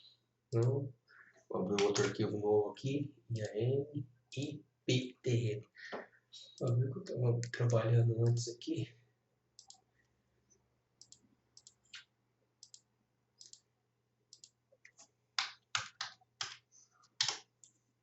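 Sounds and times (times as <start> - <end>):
computer mouse clicking: 9.6 - 9.8, 11.0 - 13.7, 14.3 - 17.8.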